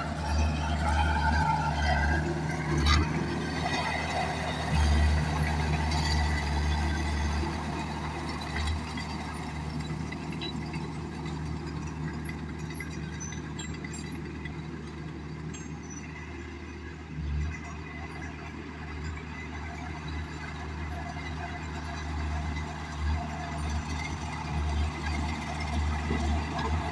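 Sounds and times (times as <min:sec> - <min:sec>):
diesel engine deep hum: 0:00.0 - 0:26.9.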